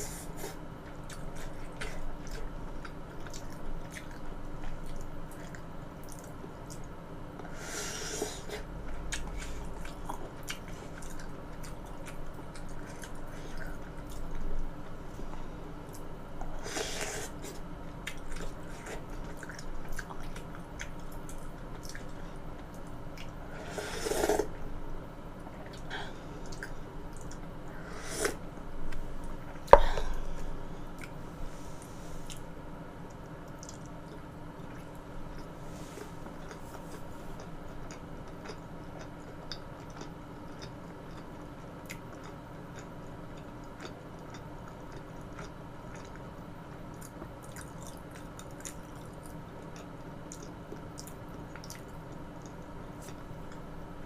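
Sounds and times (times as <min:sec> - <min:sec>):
wet chewing: 0:46.9 - 0:53.6.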